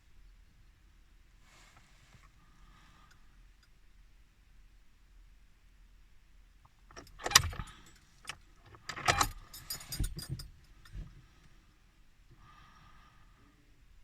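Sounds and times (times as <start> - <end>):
keys jangling: 8.9 - 10.6.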